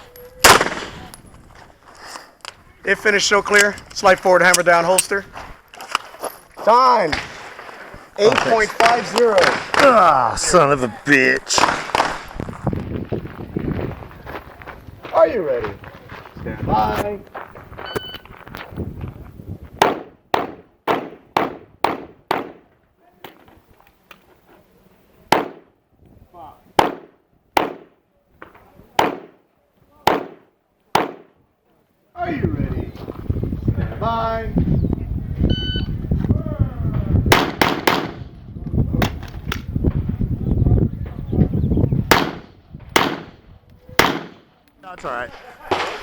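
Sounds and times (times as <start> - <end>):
pistol shots with echo: 0.4 - 1.1, 19.8 - 22.6, 25.3 - 25.7, 26.8 - 28.0, 29.0 - 29.4, 30.0 - 31.3, 37.3 - 38.3, 42.1 - 43.4, 44.0 - 44.5
low wind rumble: 7.3 - 22.3, 32.2 - 44.3.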